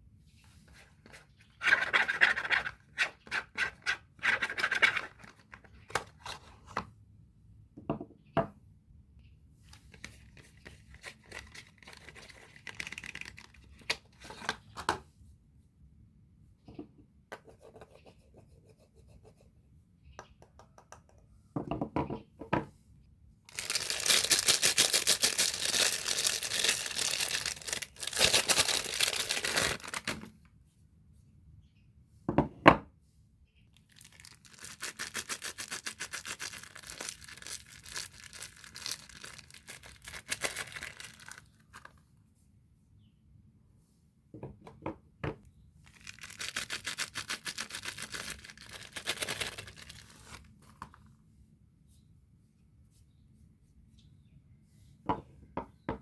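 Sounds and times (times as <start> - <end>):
wrapper crinkling: 10.8 - 13.9, 23.5 - 30.3, 33.8 - 42.0, 45.8 - 50.9.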